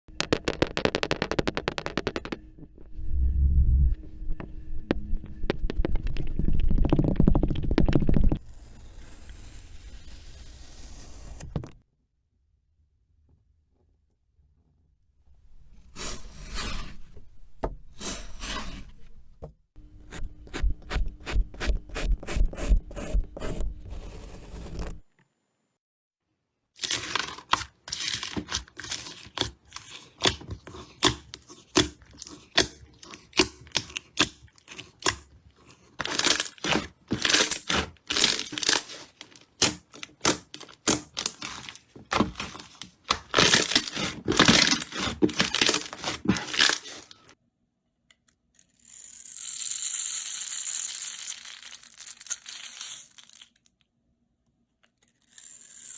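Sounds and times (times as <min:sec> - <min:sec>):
craft materials crackling and crunching: 0:00.1 - 0:02.9, 0:26.8 - 0:47.3.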